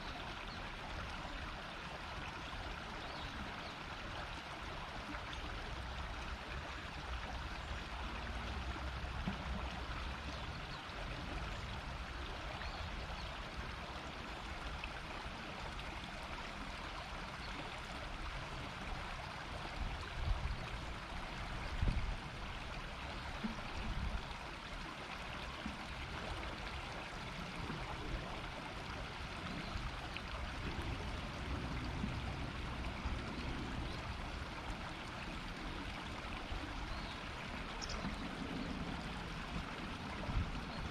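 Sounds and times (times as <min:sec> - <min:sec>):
river flowing over stones: 0:00.0 - 0:40.9.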